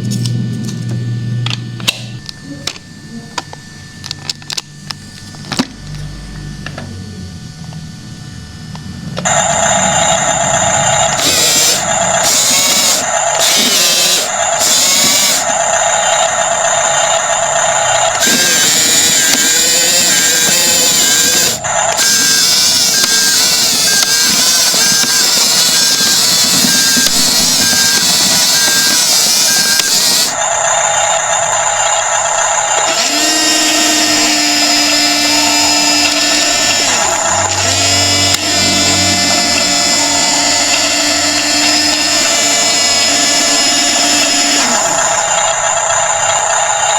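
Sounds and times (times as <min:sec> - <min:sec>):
small electric motors whining: 0:00.0 - 0:46.9.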